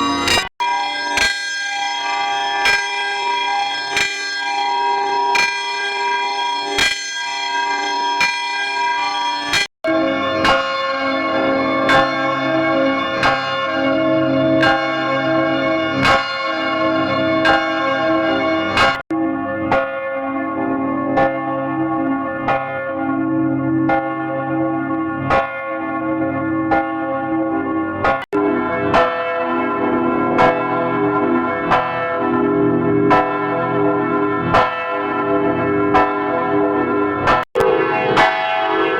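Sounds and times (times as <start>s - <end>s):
church bells ringing: 0.0s - 38.9s.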